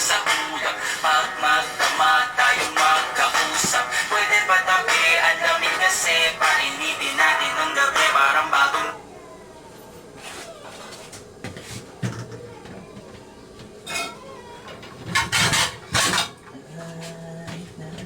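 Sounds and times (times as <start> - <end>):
kitchen utensils clinking and clattering: 13.8 - 16.6.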